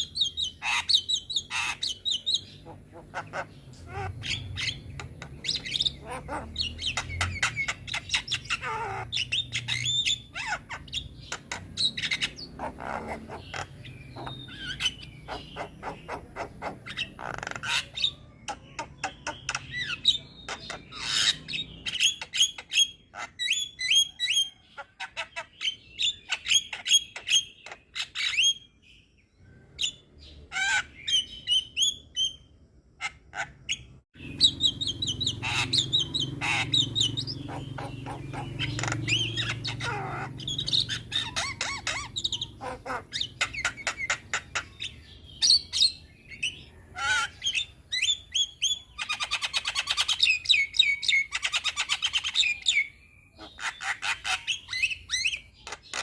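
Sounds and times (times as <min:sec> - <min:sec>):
bird singing chattering song: 0:00.0 - 0:56.0.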